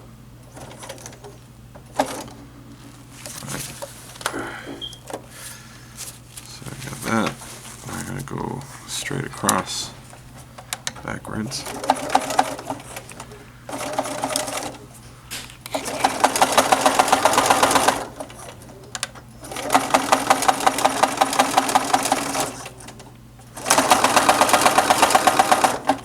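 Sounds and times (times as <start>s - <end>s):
sewing machine stitching: 0.5s - 2.4s, 11.4s - 14.8s, 15.7s - 26.0s.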